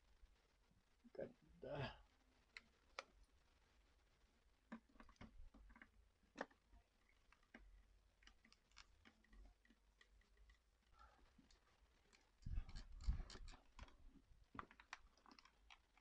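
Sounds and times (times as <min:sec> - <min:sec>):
faint small clicks and taps: 0:02.4 - 0:03.5, 0:04.6 - 0:16.0.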